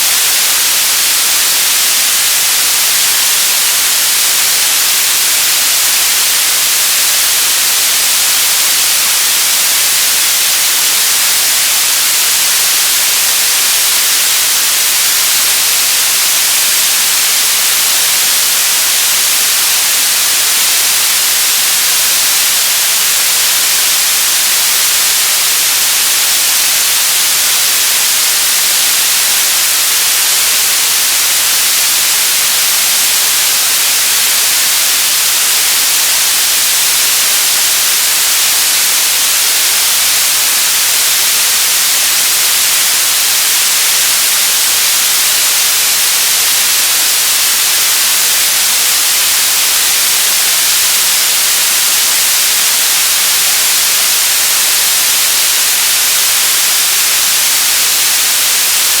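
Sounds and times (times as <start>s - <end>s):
television static hiss: 0.0s - 59.0s.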